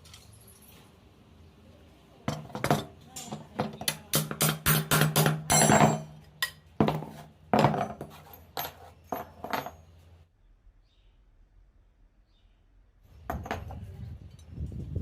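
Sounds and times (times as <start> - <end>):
metal knocking and clinking: 2.3 - 10.1, 13.2 - 14.5.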